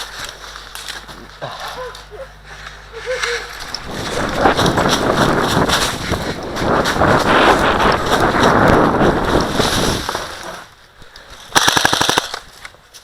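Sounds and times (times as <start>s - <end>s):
wind on microphone: 3.8s - 10.4s
airsoft gun full-auto burst: 11.5s - 12.5s.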